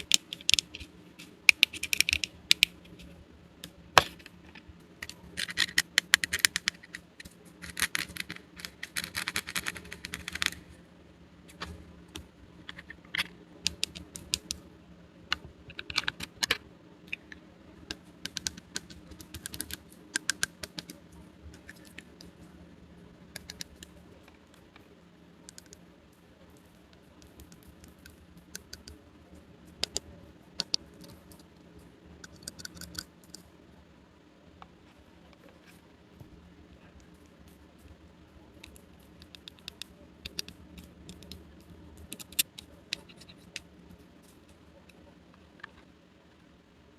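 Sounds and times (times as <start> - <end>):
plastic toy pieces clicking: 1.5 - 2.8, 5.0 - 10.6, 15.7 - 17.4, 18.2 - 21.0, 38.6 - 43.7.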